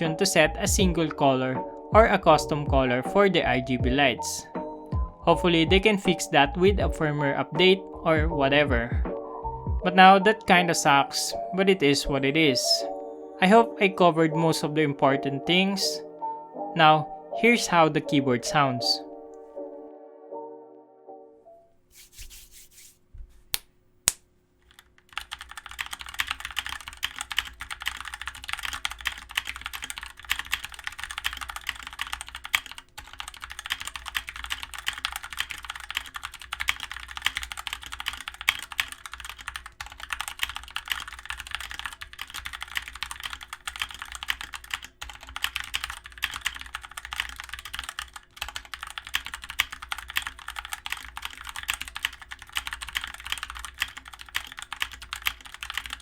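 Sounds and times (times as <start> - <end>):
mechanical keyboard typing: 24.6 - 56.0.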